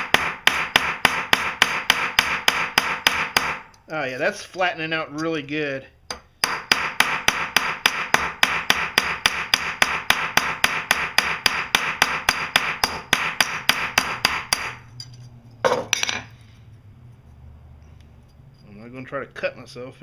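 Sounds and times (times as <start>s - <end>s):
hammer tapping on metal: 6.1s - 14.8s.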